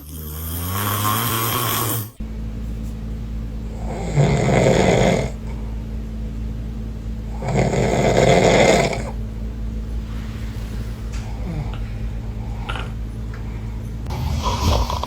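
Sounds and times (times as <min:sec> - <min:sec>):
man snoring: 0:00.0 - 0:02.2, 0:03.7 - 0:05.7, 0:07.3 - 0:09.2, 0:11.1 - 0:13.0.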